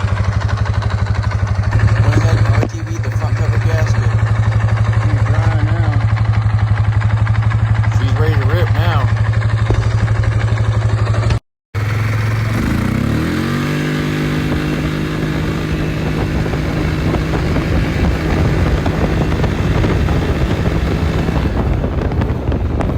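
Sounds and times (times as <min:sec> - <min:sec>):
atv engine idling and revving: 0:00.0 - 0:22.9.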